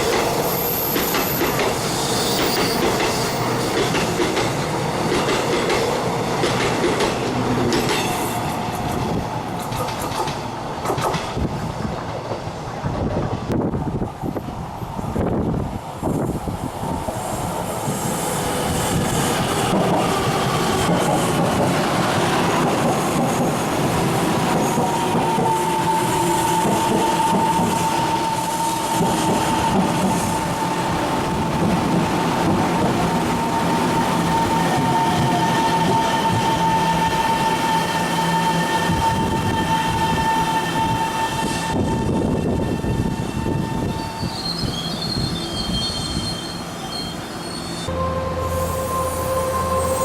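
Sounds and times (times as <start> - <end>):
passenger train running past: 0.0 - 50.0
high-pitched squeal: 33.4 - 50.0.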